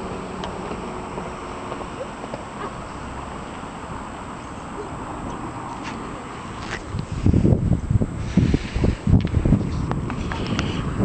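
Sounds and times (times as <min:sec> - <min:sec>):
vehicle traffic rumble: 0:00.0 - 0:11.0.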